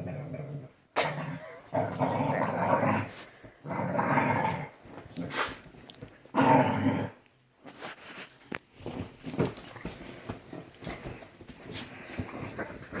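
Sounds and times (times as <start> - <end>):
dogs grumbling and whining: 0.0 - 7.3.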